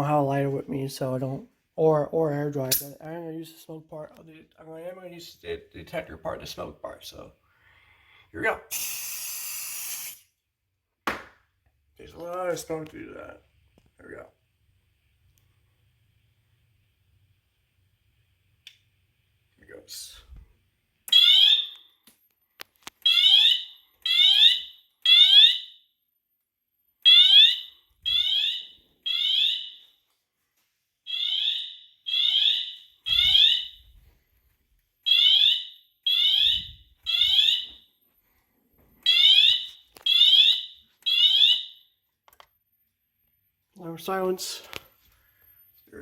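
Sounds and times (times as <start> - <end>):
fire alarm siren sweeps: 21.1 - 22.0, 23.0 - 26.0, 26.9 - 30.0, 31.0 - 34.2, 35.0 - 42.0.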